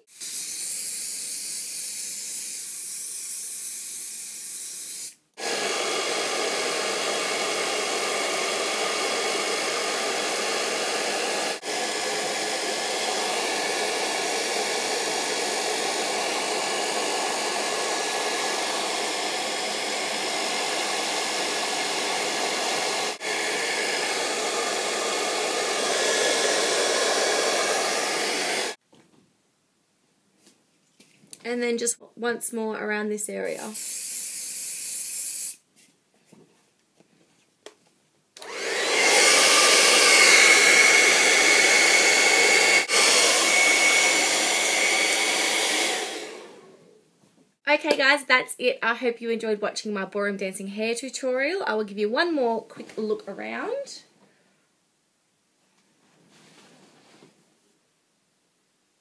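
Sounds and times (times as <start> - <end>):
hair dryer blowing: 5.4 - 28.8, 38.4 - 47.0, 51.7 - 53.8.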